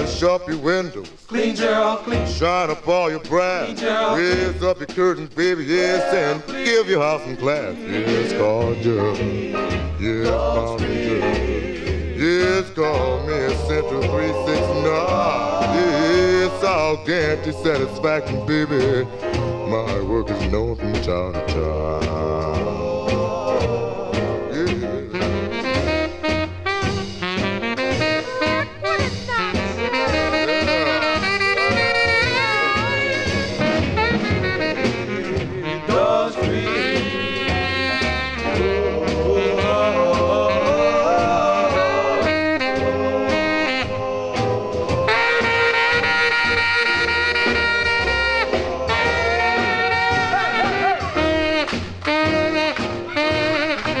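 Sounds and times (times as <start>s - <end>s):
rhythm and blues band backing: 0.0s - 54.0s
saxophone solo: 25.1s - 44.5s, 45.1s - 54.0s.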